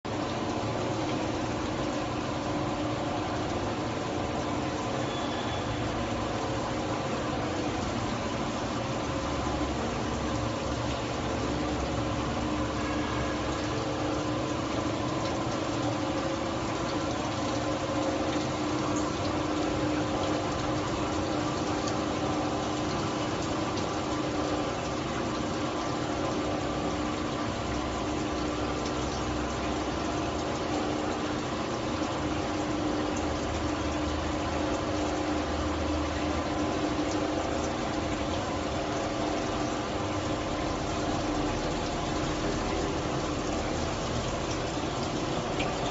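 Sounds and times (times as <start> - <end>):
machine hum with held tones: 0.1 - 45.9.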